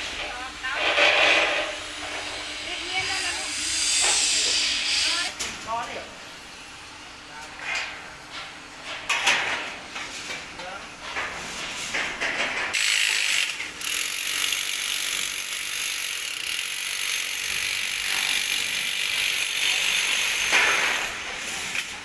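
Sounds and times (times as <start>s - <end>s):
high-pitched mechanical rattling: 0.1s - 5.5s, 12.7s - 21.2s.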